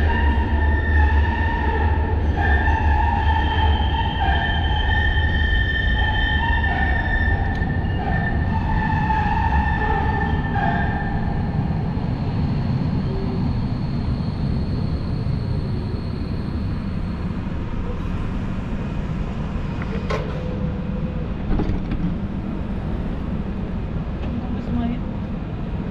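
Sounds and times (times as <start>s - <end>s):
wheel squeal: 0.0s - 11.6s
tram wheels rumbling on rails: 0.0s - 25.9s.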